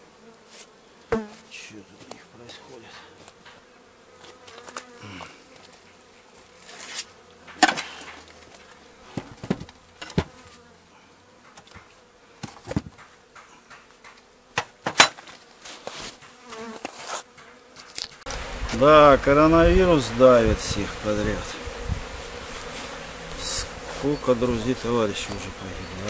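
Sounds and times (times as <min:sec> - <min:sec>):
bees buzzing: 0:00.0 - 0:26.0
wooden knocks and clunks: 0:09.1 - 0:10.4, 0:11.5 - 0:15.3.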